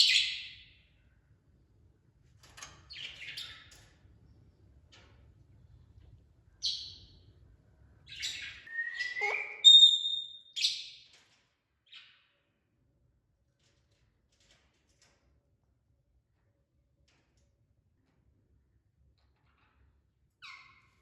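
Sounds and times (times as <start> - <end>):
parrots chirping and squawking: 8.2 - 9.9.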